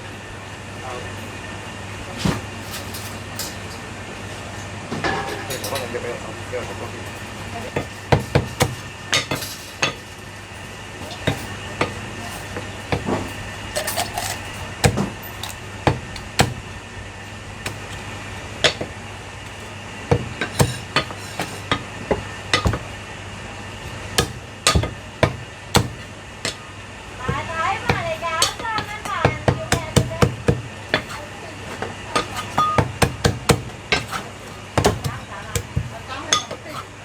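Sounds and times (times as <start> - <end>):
cleaver chopping meat on board: 7.8 - 8.9, 14.8 - 16.7, 20.1 - 23.0, 23.9 - 26.6, 27.3 - 31.2, 32.2 - 36.6.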